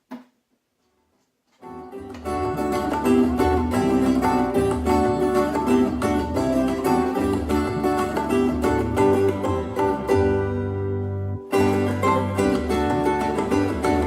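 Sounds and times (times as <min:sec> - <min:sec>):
plucked string music over speaker: 0:01.6 - 0:14.0.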